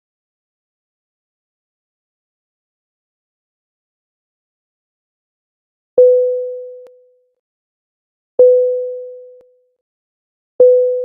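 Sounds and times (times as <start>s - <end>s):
cabin chime sine tone: 6.0s - 7.0s, 8.4s - 9.4s.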